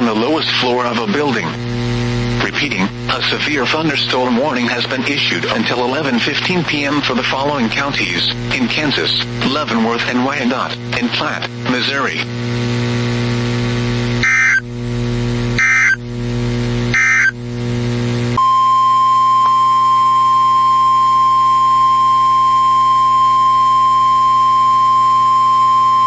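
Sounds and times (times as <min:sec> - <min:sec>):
low steady hum: 0:00.0 - 0:26.0
screeching digital data tones: 0:14.2 - 0:14.6, 0:15.6 - 0:16.0, 0:16.9 - 0:17.4
steady alert tone: 0:14.2 - 0:14.6, 0:15.6 - 0:16.0, 0:17.0 - 0:17.4.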